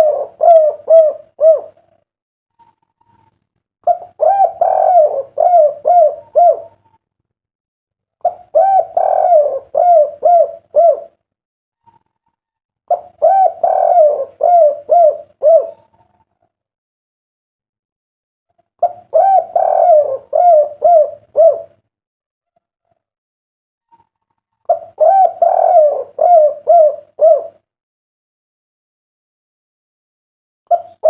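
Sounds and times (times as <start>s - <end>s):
dove cooing: 0.0s - 2.0s, 2.6s - 7.0s, 8.2s - 11.2s, 12.9s - 16.5s, 18.8s - 21.8s, 23.9s - 27.7s, 30.7s - 31.0s.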